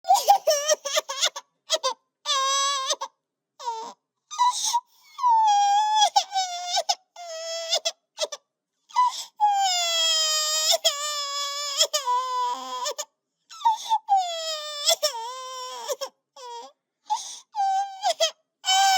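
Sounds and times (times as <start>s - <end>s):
high-pitched crying: 17.7s - 18.9s.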